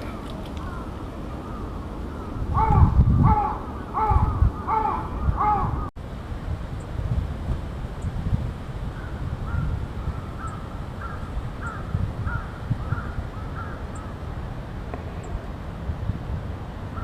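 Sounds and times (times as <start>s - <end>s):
bird calling harsh notes: 0.0s - 5.9s, 9.0s - 14.3s.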